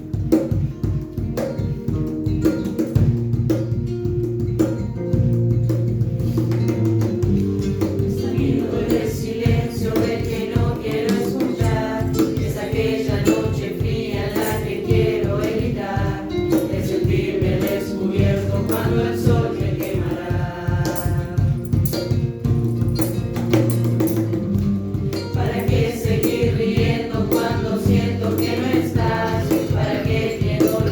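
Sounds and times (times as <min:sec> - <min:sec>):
percussive beat: 0:00.0 - 0:30.9
voices singing: 0:08.0 - 0:22.3, 0:25.3 - 0:30.9.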